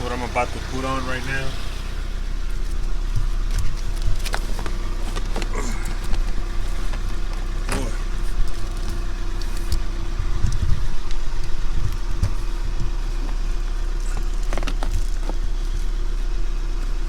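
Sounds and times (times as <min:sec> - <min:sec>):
car engine idling: 0:00.0 - 0:17.0
handling knocks and rustles: 0:02.4 - 0:17.0.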